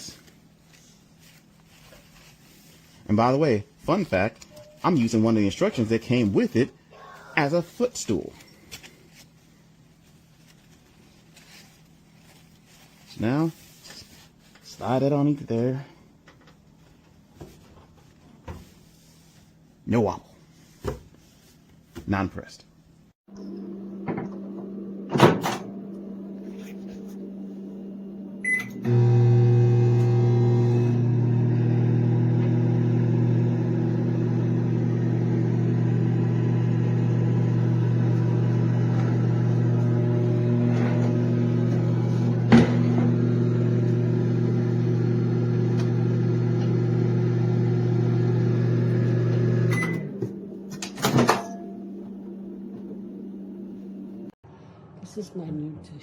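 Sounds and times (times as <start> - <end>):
microwave oven humming: 23.3 - 54.3
microwave oven beeping: 28.4 - 39.7, 40.4 - 54.0.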